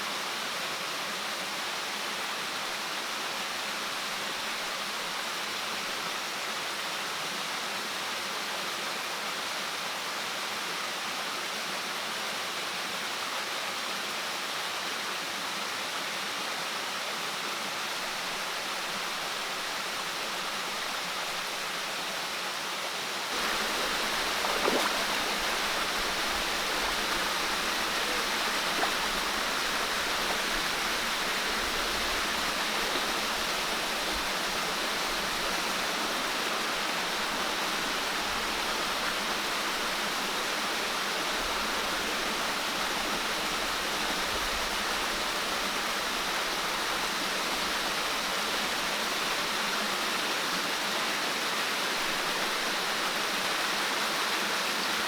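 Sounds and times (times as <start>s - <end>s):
water rushing: 18.0s - 22.2s, 23.3s - 54.9s.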